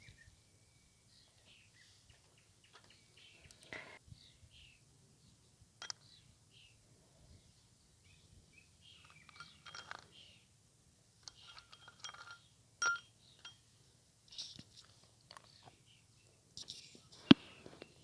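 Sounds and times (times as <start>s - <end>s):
faint birdsong: 0.0s - 18.0s
light clinks and taps: 5.8s - 6.2s, 9.0s - 10.2s, 11.2s - 13.7s.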